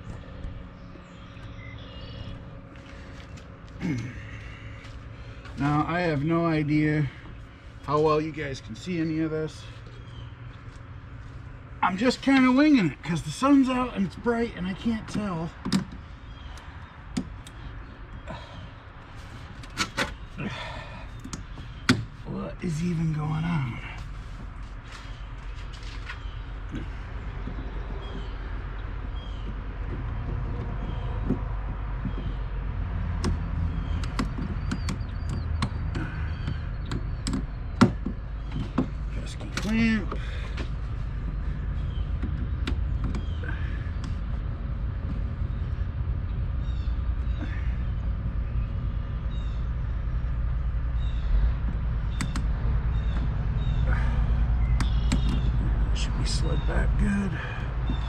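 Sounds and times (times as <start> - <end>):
bird chirping: 0.0 - 24.2, 24.8 - 58.0
steady low rumble: 0.0 - 58.0
hands and tools tapping car parts: 14.1 - 18.4, 21.1 - 22.2, 26.1 - 45.6, 51.6 - 56.0, 57.6 - 58.0.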